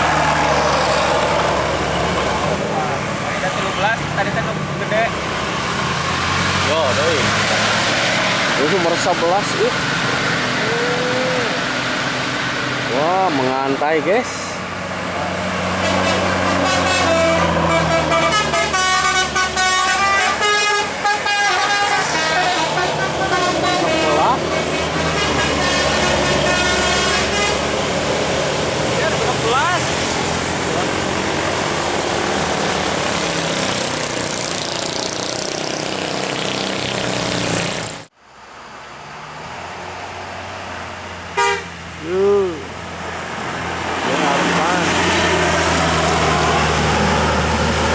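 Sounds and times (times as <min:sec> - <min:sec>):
large vehicle engine and road noise: 0:00.0 - 0:47.9
musical bus horn tune: 0:15.8 - 0:27.8, 0:41.4 - 0:41.8.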